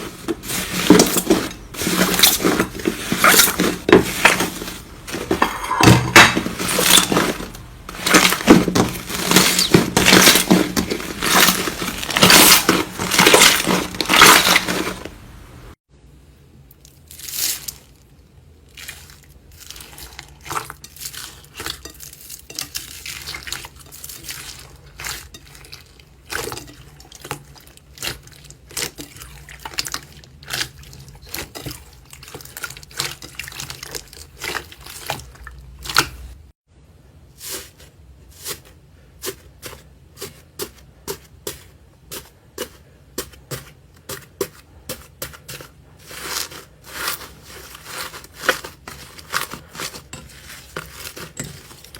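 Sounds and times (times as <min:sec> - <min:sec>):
slime squished by hand: 0:07.9 - 0:15.1.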